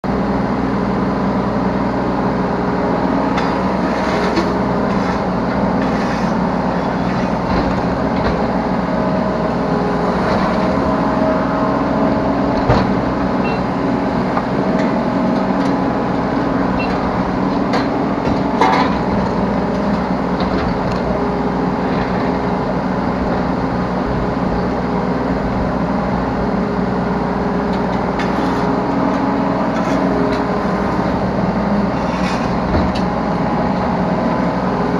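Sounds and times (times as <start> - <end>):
excavator diesel engine running: 0.0 - 34.9.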